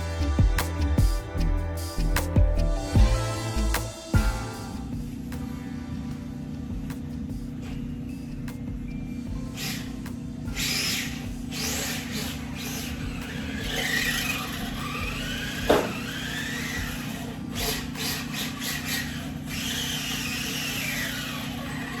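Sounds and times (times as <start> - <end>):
electric motor and gears whining: 0.0 - 5.6, 9.3 - 22.0.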